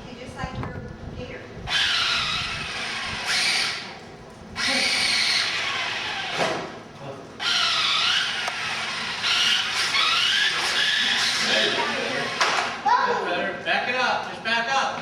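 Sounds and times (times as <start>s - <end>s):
toy car electric motor whining: 1.7s - 3.9s, 4.6s - 6.7s, 7.4s - 12.8s.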